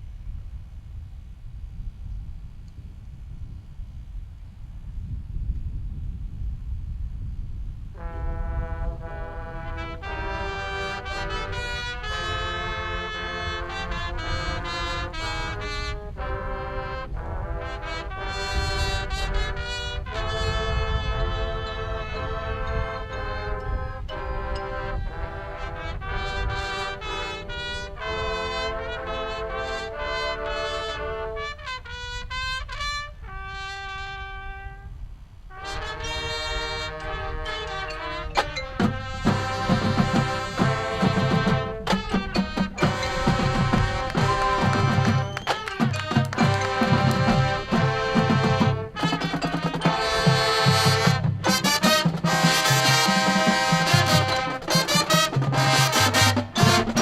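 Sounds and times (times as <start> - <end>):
marching band brass chords: 8.0 - 34.8, 35.5 - 57.0
low drum beat: 38.7 - 57.0.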